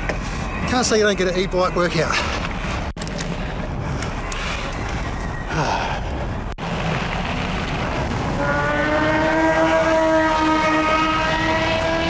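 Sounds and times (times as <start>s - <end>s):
rumble of riding on dirt: 0.0s - 12.0s
motorbike engine at high revs: 6.8s - 12.0s.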